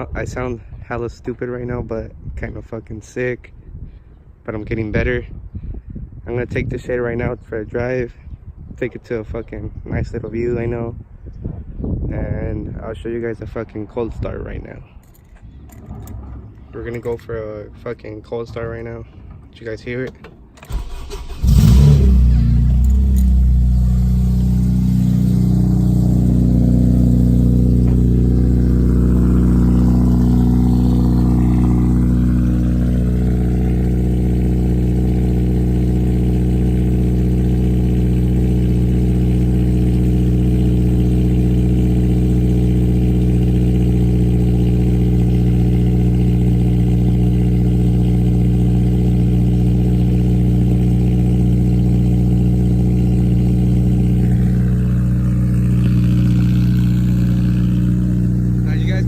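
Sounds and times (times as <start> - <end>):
car engine idling: 20.7 - 59.0.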